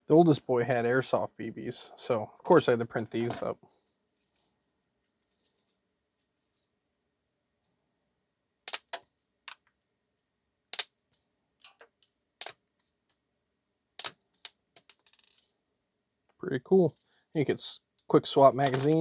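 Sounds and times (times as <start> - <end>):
sharp plastic clicks and snaps: 8.7 - 9.1, 10.7 - 11.0, 12.4 - 12.6, 14.0 - 14.5.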